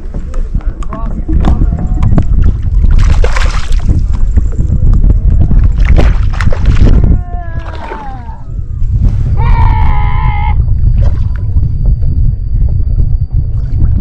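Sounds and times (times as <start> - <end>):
wind rumbling on microphone: 0.0 - 14.0
water splashing around kayak: 2.3 - 4.5, 5.6 - 7.0, 7.6 - 8.2.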